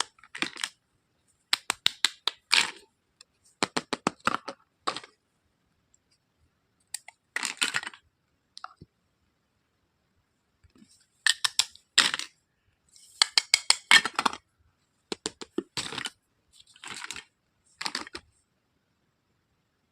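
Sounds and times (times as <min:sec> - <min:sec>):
plastic toy pieces clattering: 0:11.2 - 0:12.3, 0:13.2 - 0:14.4, 0:15.2 - 0:16.2, 0:16.8 - 0:18.2.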